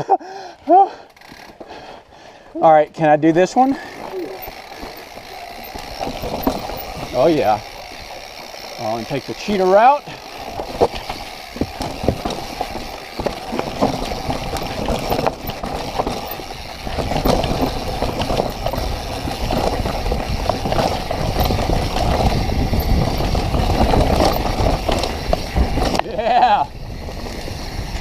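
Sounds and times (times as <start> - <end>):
bike rattling over rocks: 1.1 - 2.0, 3.0 - 28.0
wind rumbling on microphone: 5.7 - 8.1, 10.4 - 28.0.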